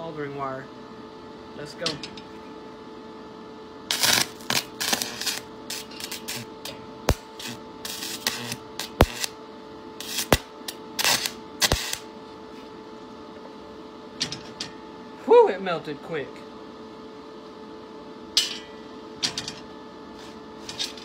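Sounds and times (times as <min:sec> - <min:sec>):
steady hum: 0:00.0 - 0:21.0
welding arc crackling: 0:03.9 - 0:09.4, 0:10.0 - 0:12.1.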